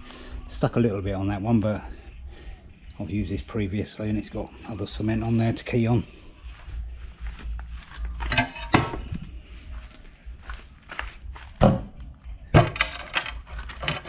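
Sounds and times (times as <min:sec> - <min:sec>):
blocks knocking and scraping: 0:11.6 - 0:14.0.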